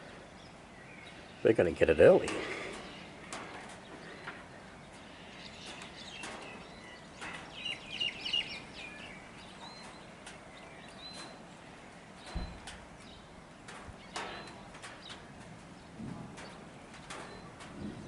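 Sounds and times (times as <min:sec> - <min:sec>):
birds chirping: 0:00.0 - 0:18.0
faint outdoor background: 0:00.0 - 0:18.0.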